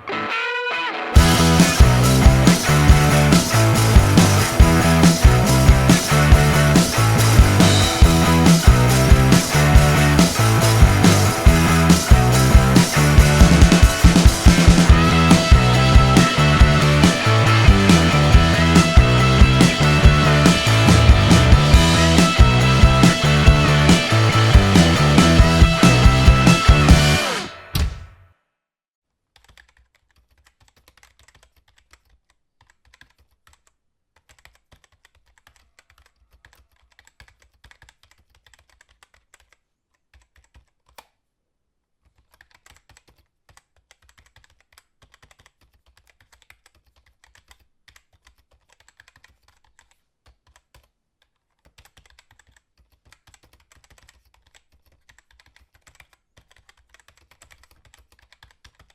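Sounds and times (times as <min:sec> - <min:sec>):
typing on computer keyboard: 0:29.3 - 0:41.1, 0:42.0 - 0:58.9.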